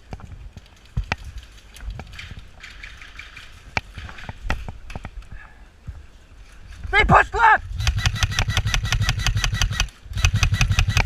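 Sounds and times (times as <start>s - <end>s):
airsoft gunshots: 7.8s - 11.0s.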